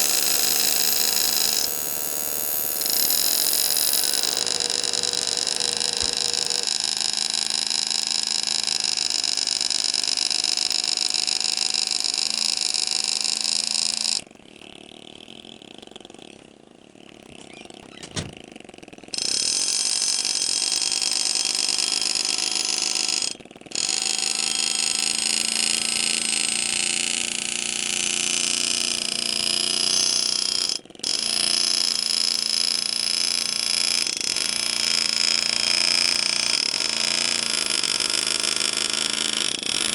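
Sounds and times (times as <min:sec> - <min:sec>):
pneumatic engraver hammering: 0:00.0 - 0:09.1.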